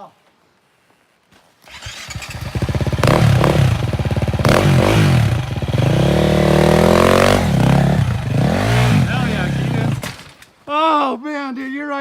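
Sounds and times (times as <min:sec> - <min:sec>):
dirt bike engine revving: 0:01.7 - 0:10.3.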